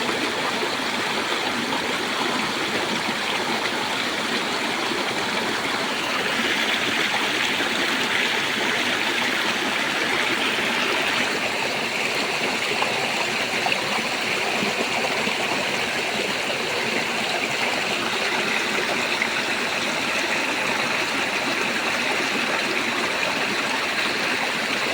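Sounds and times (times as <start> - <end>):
water pouring over waterfall: 5.3 - 24.9.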